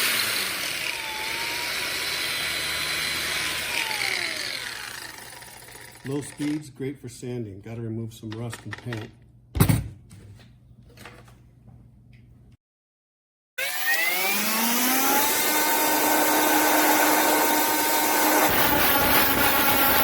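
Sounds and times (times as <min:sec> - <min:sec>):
angle grinder whine: 0:00.0 - 0:06.7, 0:13.6 - 0:20.0
grinding disc on metal: 0:15.9 - 0:20.0.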